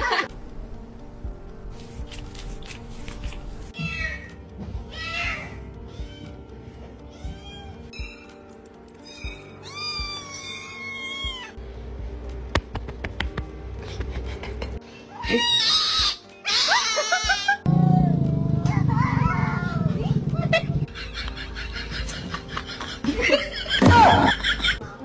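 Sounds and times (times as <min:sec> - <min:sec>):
background music: 0:00.0 - 0:25.0
cat meowing: 0:03.8 - 0:04.3, 0:04.9 - 0:06.4, 0:07.1 - 0:08.2, 0:09.0 - 0:11.5.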